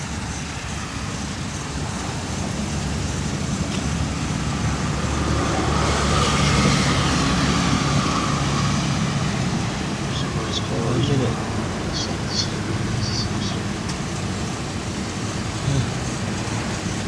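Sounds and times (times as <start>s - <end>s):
passing vehicle rumble: 0.0s - 17.0s.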